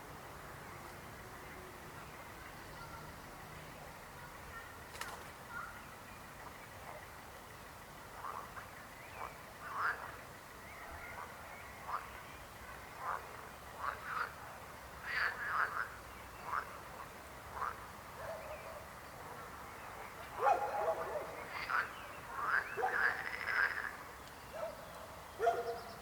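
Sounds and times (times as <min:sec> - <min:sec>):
frogs croaking: 0:06.4 - 0:24.7.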